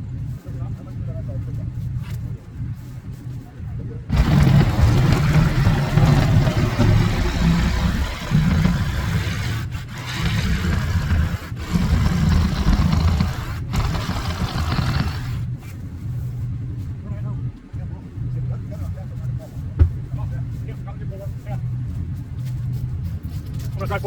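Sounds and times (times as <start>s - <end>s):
boat hull scraping on trailer: 4.1s - 15.5s
vehicle engine running: 4.1s - 15.6s.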